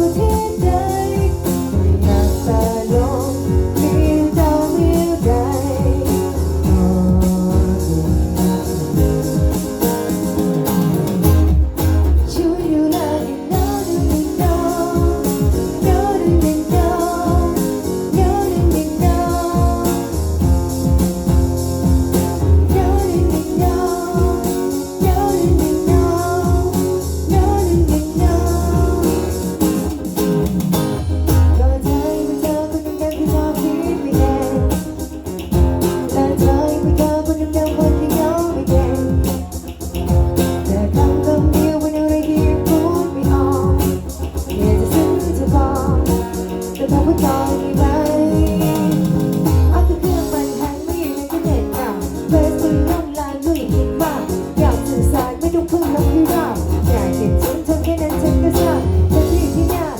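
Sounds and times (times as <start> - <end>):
pop song with guitar and beat: 0.0 - 59.9.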